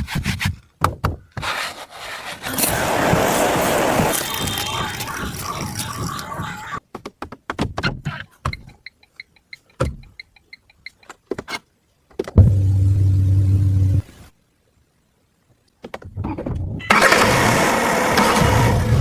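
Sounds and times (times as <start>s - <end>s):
loud noisy sound: 2.5s - 6.8s.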